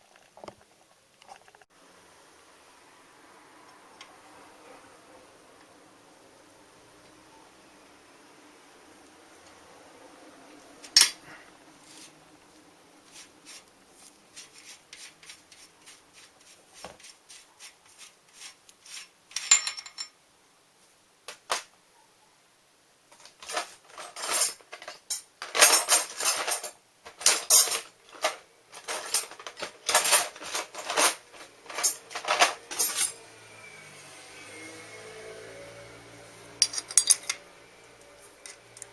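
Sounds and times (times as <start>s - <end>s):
metal tools clinking and clattering: 10.9s - 11.2s, 19.3s - 20.2s, 23.2s - 33.2s, 36.6s - 37.4s.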